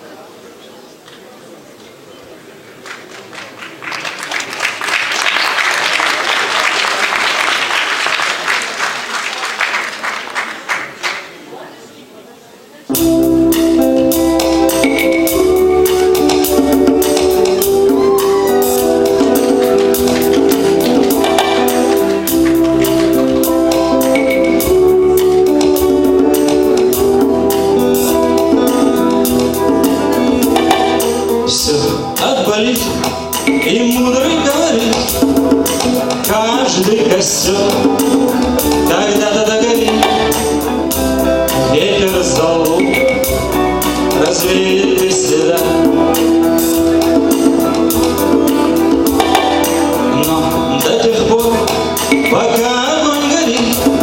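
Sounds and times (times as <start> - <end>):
audience applauding: 2.8 - 11.5, 17.9 - 23.4
drum kit beat: 12.9 - 54.0
rock guitar: 12.9 - 54.0.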